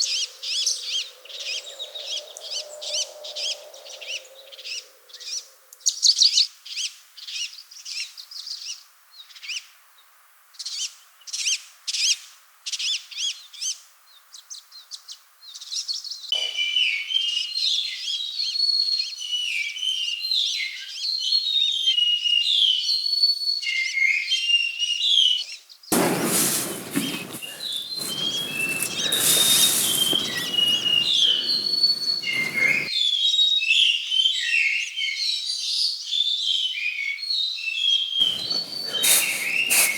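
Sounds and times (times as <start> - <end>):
small birds chirping: 25.9 - 32.9, 38.2 - 39.9.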